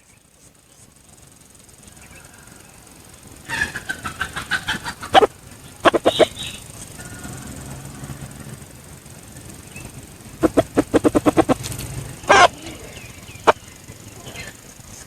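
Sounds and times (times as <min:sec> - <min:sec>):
faint small bird chirps: 0:00.0 - 0:04.3, 0:05.2 - 0:07.6, 0:12.2 - 0:15.0
junglefowl clucking: 0:01.8 - 0:08.4, 0:10.3 - 0:15.0
harsh squawk: 0:02.1 - 0:08.6, 0:10.4 - 0:14.7.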